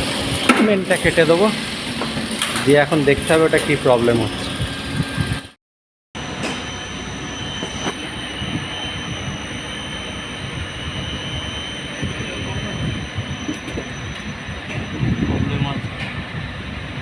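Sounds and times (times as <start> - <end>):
high mechanical whine: 0.0 - 5.6, 6.2 - 17.0
elevator machinery rumbling: 6.2 - 17.0.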